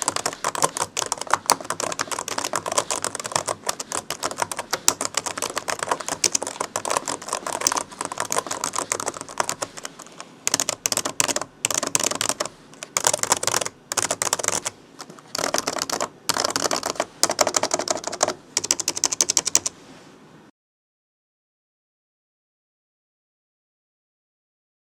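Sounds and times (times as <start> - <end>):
laptop keyboard typing: 0.0 - 19.7.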